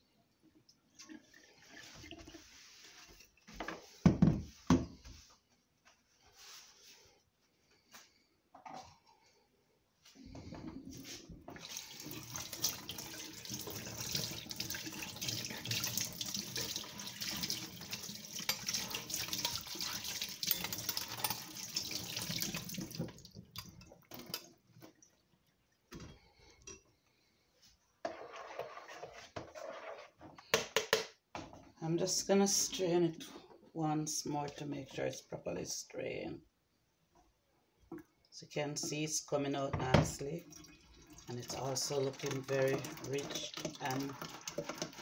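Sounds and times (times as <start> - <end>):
juice pouring through strainer: 0.9 - 3.1, 11.0 - 24.8, 40.4 - 45.0.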